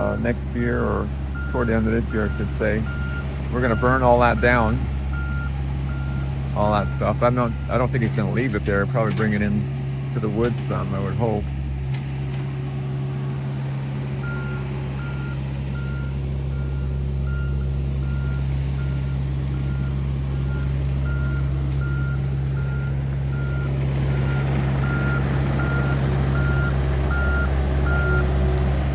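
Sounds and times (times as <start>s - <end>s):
backup alarm beeping: 0.0s - 8.5s, 14.2s - 28.3s
diesel engine running: 0.0s - 28.9s.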